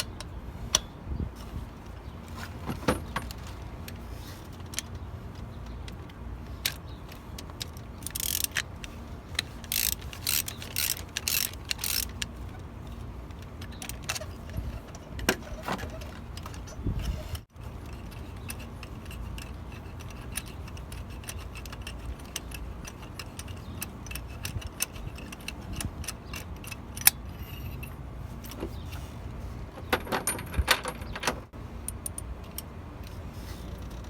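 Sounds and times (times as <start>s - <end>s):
ratchet wrench clicking: 7.4s - 12.3s, 18.0s - 27.9s.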